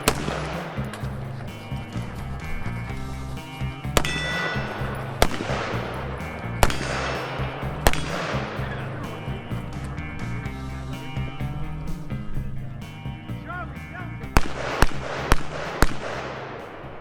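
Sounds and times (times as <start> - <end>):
gunshots with echo: 0.0 - 1.4, 4.0 - 9.4, 14.4 - 17.0
background music: 0.0 - 17.0.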